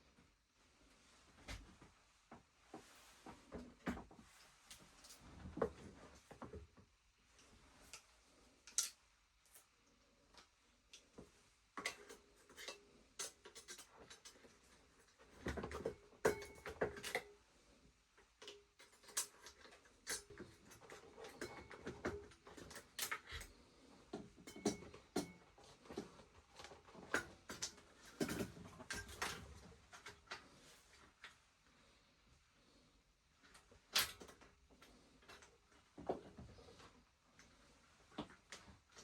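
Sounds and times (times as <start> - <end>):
tools clicking and knocking on metal: 15.4 - 17.3, 24.1 - 30.4.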